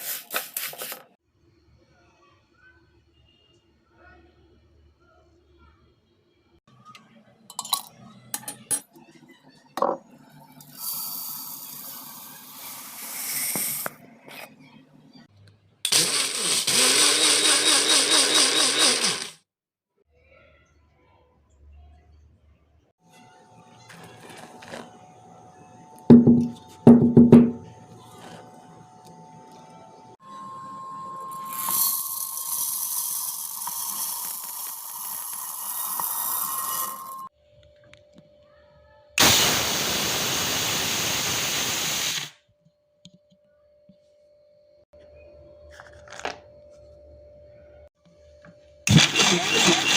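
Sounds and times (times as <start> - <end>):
mixer grinder running: 15.9 - 19.4, 23.4 - 26.6, 27.9 - 37.3, 48.9 - 49.9
kitchen motor whine: 15.9 - 19.5, 23.0 - 38.2, 43.8 - 49.9
hiss: 39.2 - 42.4.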